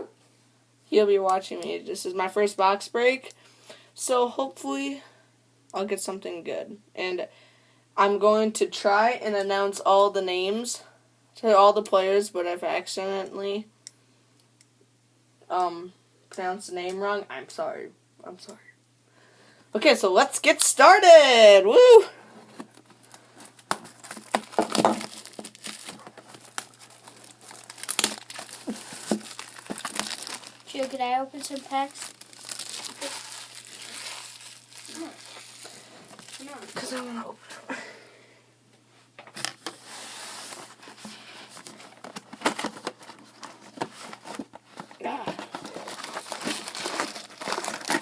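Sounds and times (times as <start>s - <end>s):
plastic wrapping crinkling: 22.5s - 37.2s, 40.4s - 48.0s.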